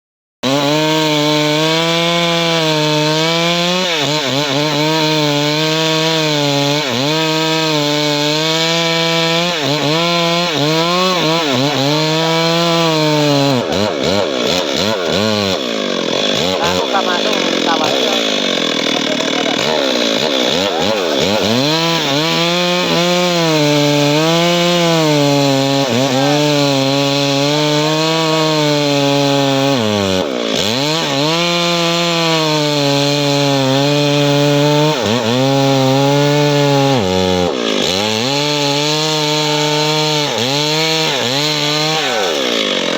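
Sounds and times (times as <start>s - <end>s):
chainsaw cutting wood: 0.4s - 42.9s.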